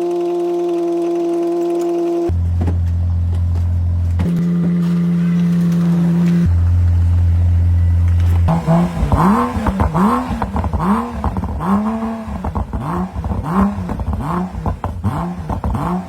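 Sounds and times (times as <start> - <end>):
car engine revving: 0.0 - 16.0.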